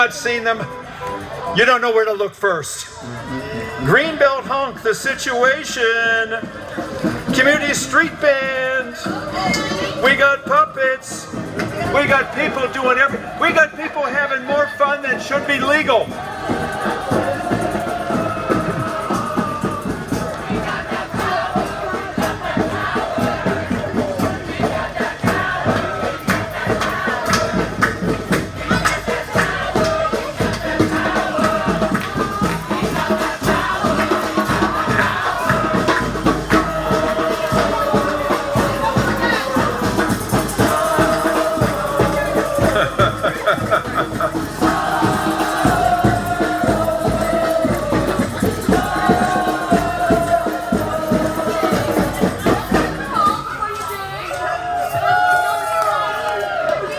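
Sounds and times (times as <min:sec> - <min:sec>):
drums: 0:02.8 - 0:56.9
brass band horns: 0:06.3 - 0:53.8.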